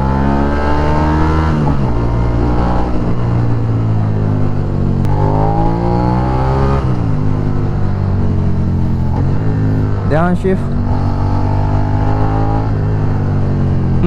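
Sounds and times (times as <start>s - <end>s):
motorcycle engine accelerating: 0.0s - 14.0s.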